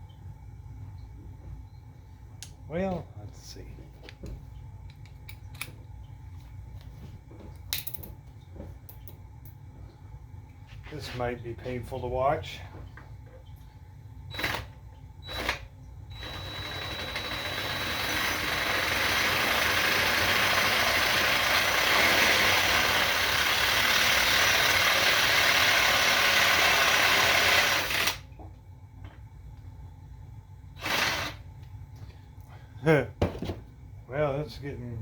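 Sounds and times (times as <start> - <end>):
electric drill drilling: 14.3 - 14.7, 15.3 - 28.2, 30.8 - 31.4.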